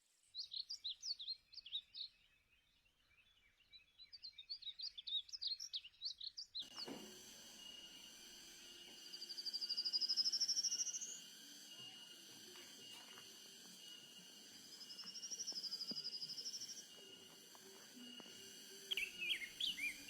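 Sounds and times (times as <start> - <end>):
high-pitched insect drone: 6.6 - 20.0
bird trilling: 9.0 - 20.0.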